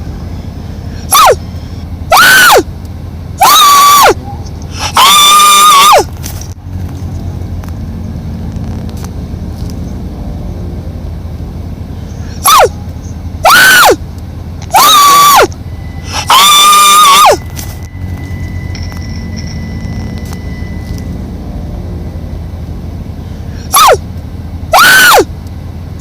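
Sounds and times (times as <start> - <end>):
animal shrill cries: 1.1 - 1.4, 2.1 - 2.6, 3.4 - 4.2, 4.8 - 6.1, 12.4 - 12.7, 13.4 - 14.0, 14.7 - 17.4, 23.7 - 24.0, 24.7 - 25.3
steady low hum: 6.1 - 26.0.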